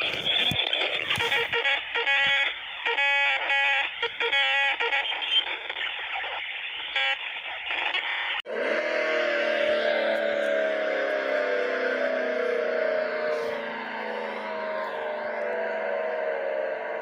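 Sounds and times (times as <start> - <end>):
radio static hiss: 0.0 - 8.4.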